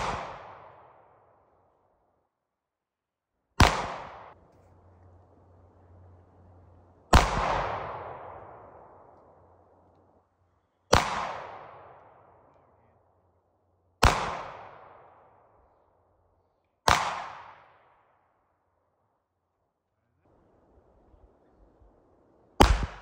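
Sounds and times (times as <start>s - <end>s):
pistol shots echoing: 0.0s - 1.2s, 3.6s - 4.9s, 6.0s - 10.0s, 10.9s - 12.8s, 14.0s - 15.4s, 16.8s - 17.8s, 22.6s - 23.0s.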